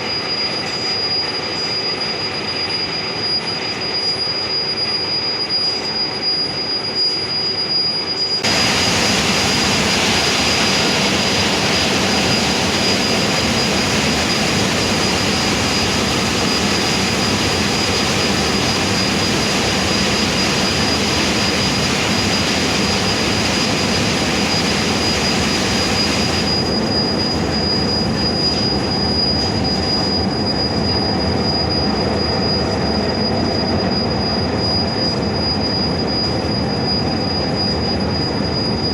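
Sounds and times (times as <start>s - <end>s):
high thin whine: 5.0s - 33.2s.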